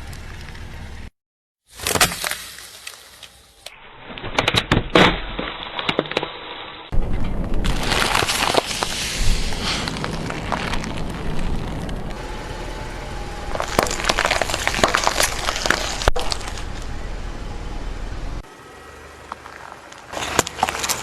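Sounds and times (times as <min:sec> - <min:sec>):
car rumbling: 0:00.0 - 0:01.1, 0:06.9 - 0:21.0
plastic toy crunching under tyres: 0:07.6 - 0:12.2, 0:13.4 - 0:16.8, 0:19.3 - 0:21.0.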